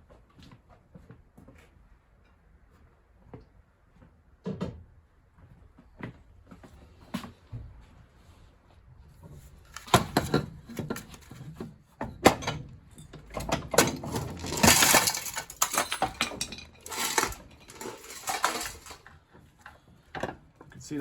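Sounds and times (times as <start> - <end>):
metal parts clinking and knocking: 12.2 - 19.1
metal scraping: 13.9 - 19.1.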